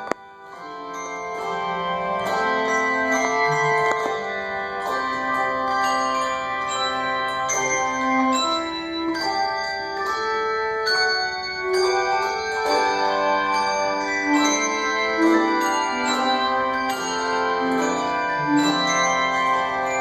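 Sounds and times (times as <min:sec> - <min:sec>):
handbell choir playing: 0:00.0 - 0:20.0.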